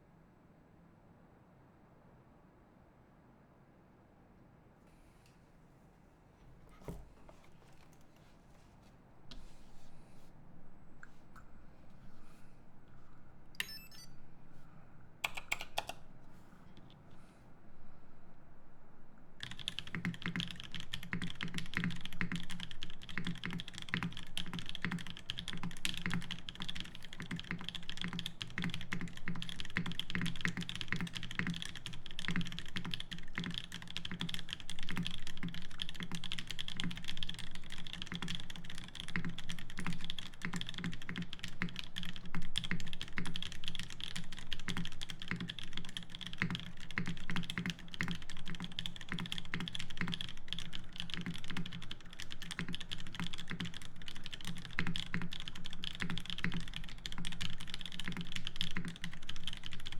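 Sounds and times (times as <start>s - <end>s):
fast mechanical keyboard typing: 15.2s - 16.0s, 19.4s - 59.9s.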